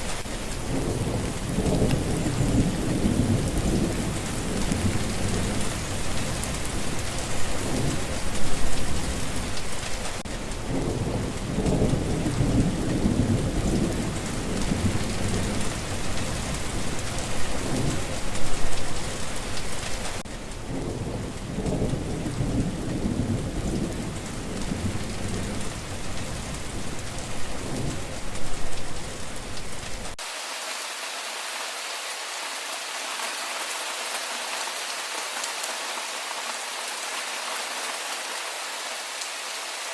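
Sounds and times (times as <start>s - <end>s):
heavy rain: 0.0s - 39.9s
rolling thunder: 0.6s - 9.6s, 10.6s - 19.4s, 20.6s - 30.2s.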